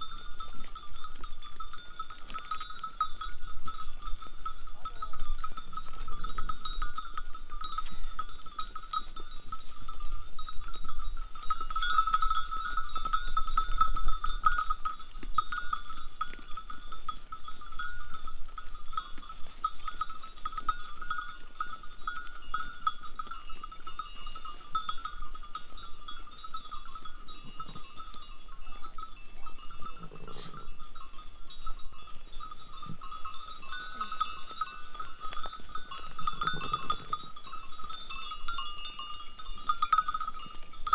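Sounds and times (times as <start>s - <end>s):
animal bells clanking: 0.0s - 40.9s.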